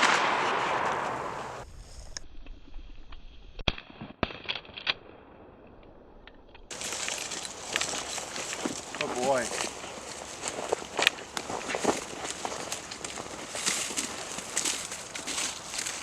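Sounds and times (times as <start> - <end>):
shotgun shot echo: 0.0 - 1.6.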